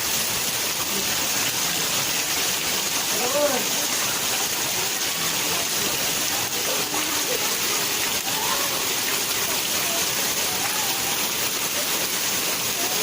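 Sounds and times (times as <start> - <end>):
heavy rain: 0.0 - 13.0
faint children's voices: 4.6 - 13.0.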